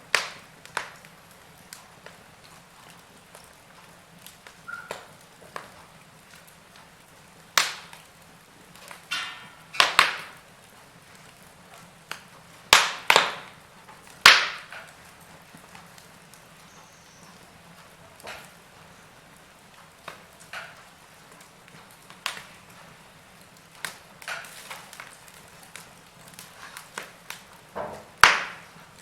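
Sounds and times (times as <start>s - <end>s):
burning wood sputtering: 0.0s - 29.0s
faint steady fire hiss: 0.0s - 29.0s
wood fire crackling: 0.0s - 29.0s.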